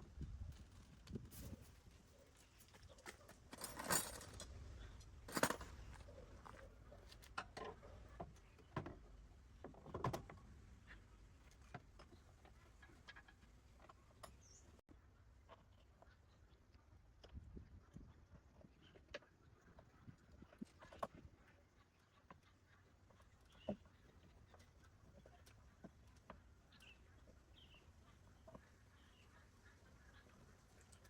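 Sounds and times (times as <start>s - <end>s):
light knocks and clinks: 3.0s - 4.5s, 5.3s - 6.0s.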